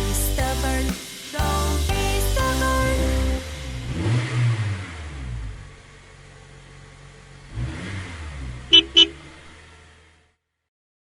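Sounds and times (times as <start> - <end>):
cartoon engine revving: 2.8 - 5.7, 7.5 - 9.4
horn beeps: 8.7 - 9.3.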